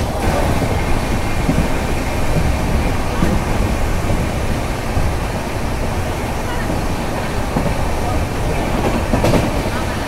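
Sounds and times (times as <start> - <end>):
train rumbling and rushing: 0.0 - 10.0.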